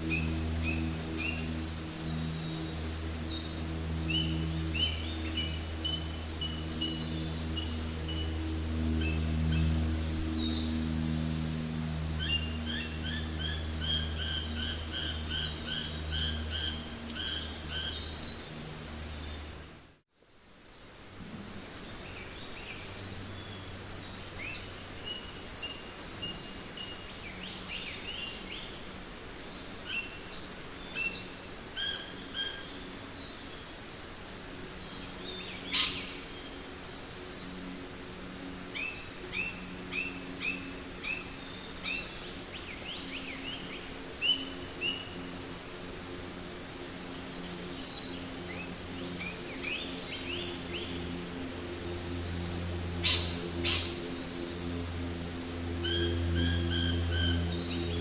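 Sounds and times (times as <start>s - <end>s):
low hum: 0.0s - 20.0s, 20.6s - 58.0s
steady background hiss: 0.0s - 58.0s
birds chirping and calling: 35.6s - 36.3s, 52.3s - 54.4s.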